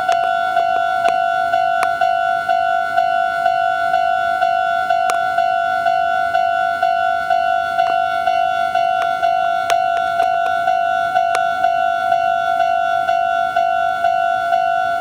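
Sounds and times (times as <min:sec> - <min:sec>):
level crossing warning bell: 0:00.0 - 0:15.0
sharp clicks: 0:07.8 - 0:11.7.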